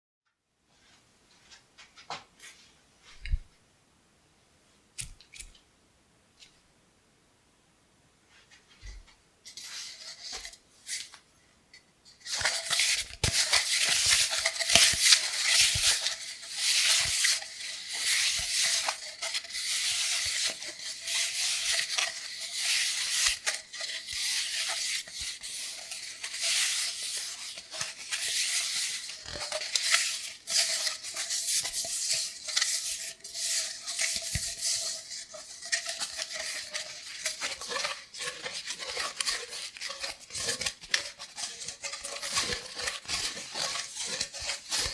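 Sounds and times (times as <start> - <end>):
scratching cardboard tube: 9.5 - 11.2, 12.2 - 44.9.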